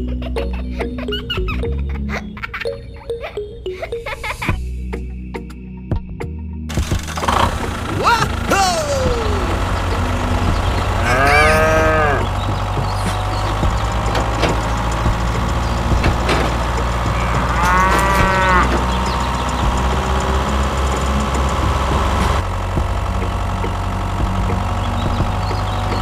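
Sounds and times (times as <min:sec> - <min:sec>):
low engine hum: 0:06.7 - 0:26.0
cow mooing: 0:10.8 - 0:12.4, 0:17.0 - 0:19.3.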